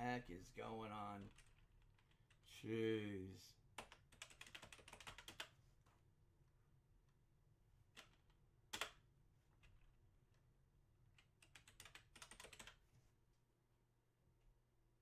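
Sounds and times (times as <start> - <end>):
typing on computer keyboard: 1.2 - 2.4, 3.8 - 5.5, 7.9 - 9.0, 11.2 - 12.8.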